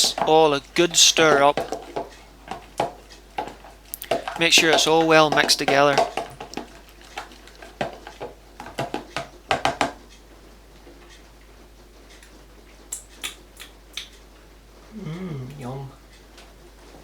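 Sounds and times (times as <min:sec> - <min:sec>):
spoon stirring thick sauce: 0:00.0 - 0:10.1.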